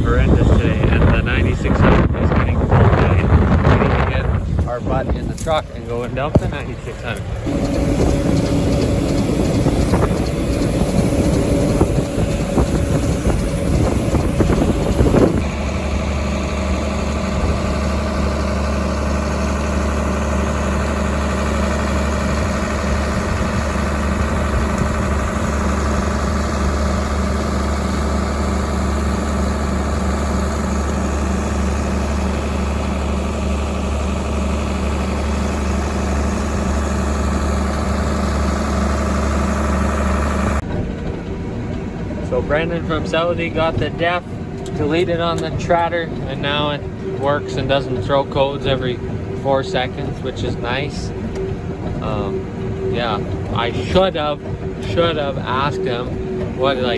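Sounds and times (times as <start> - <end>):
wind buffeting microphone: 0.0 - 20.9, 21.9 - 28.0
farm engine drone inside cab: 0.0 - 56.9
harvest machinery running: 0.0 - 56.9.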